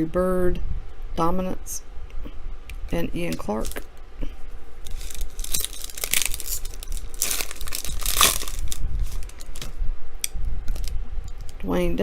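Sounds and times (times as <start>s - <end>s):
plastic wrapper crinkling: 4.8s - 9.8s, 10.7s - 11.6s.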